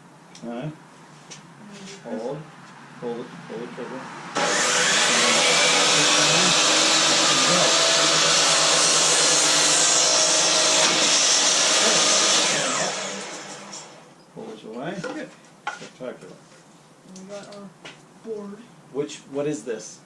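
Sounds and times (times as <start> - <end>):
power saw cutting wood: 4.3 - 14.0
saw motor winding down: 4.3 - 14.0.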